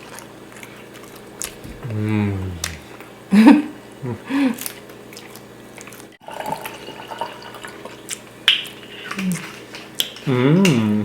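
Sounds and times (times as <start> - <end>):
wet chewing and lip smacks: 0.0 - 1.9, 2.6 - 3.1, 4.6 - 6.1, 8.0 - 10.8.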